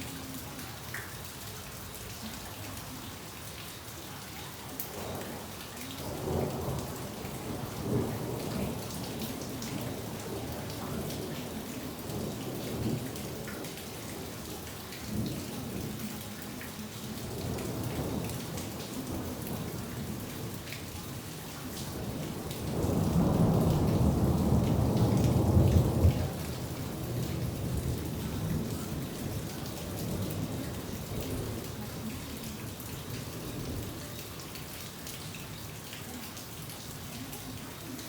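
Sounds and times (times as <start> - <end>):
rain pattering: 0.0 - 38.0
thunder rumbling: 22.0 - 31.7.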